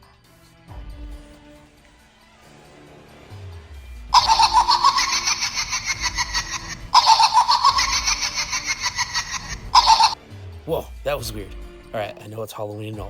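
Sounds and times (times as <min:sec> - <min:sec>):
creepy cackling laugh: 0:04.2 - 0:10.2.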